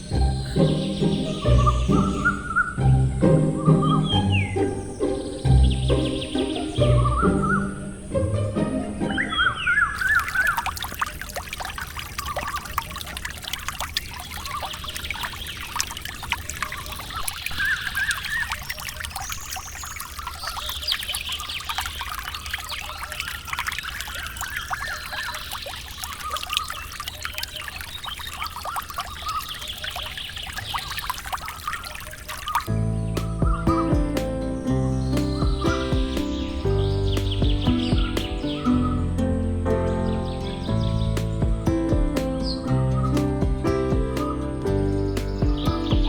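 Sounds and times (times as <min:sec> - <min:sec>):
bird chirps: 0:00.0 - 0:08.4, 0:09.0 - 0:10.8, 0:32.5 - 0:46.0
water trickling and splashing: 0:00.0 - 0:46.0.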